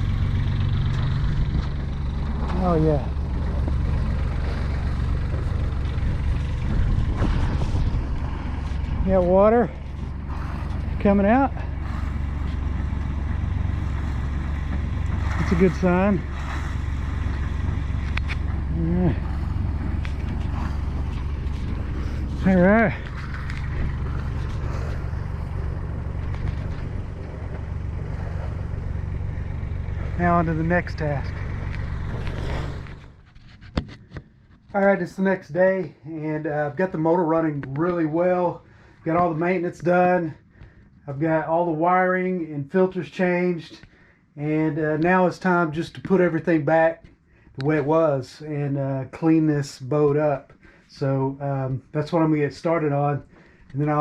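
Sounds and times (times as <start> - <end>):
marine diesel engine running: 0.0 - 54.0
cooling water discharging: 2.3 - 33.1.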